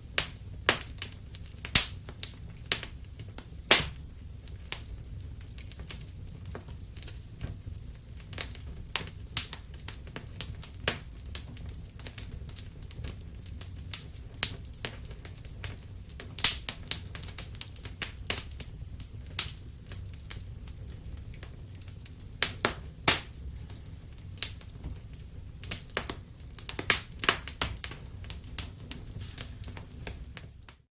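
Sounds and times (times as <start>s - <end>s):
low rumble of burning: 0.0s - 30.9s
wood fire crackling and popping: 0.0s - 30.9s.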